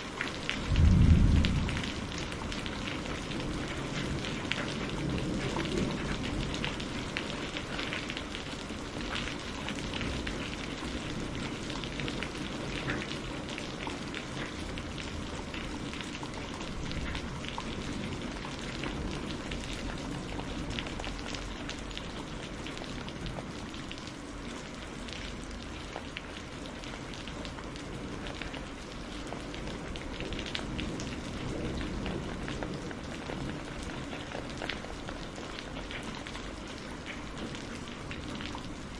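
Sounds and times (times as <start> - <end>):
rain drops pattering: 0.0 - 38.9
low rumble: 0.7 - 2.9.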